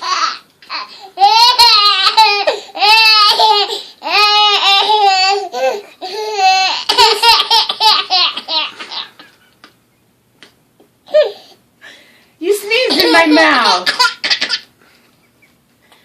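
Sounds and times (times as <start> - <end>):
baby laughing: 0.0 - 9.5, 12.9 - 14.7.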